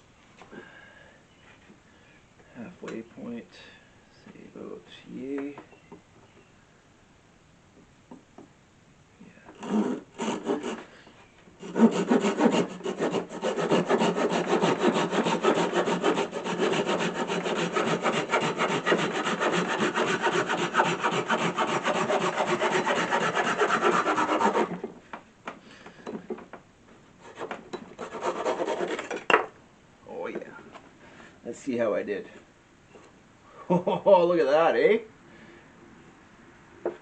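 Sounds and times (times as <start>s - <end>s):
hand saw cutting wood: 9.6s - 10.8s, 11.6s - 24.9s, 27.2s - 29.3s.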